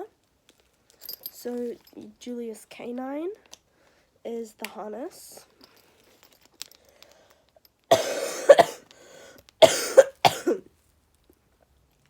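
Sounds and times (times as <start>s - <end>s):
person coughing: 7.9s - 8.8s, 9.6s - 10.6s.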